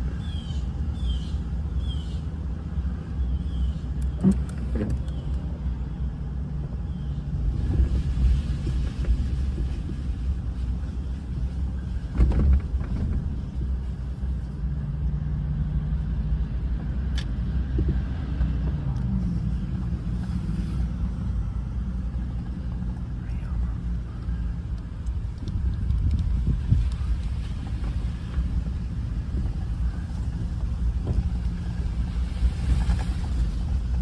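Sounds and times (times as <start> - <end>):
car road and engine rumble: 0.0 - 34.0.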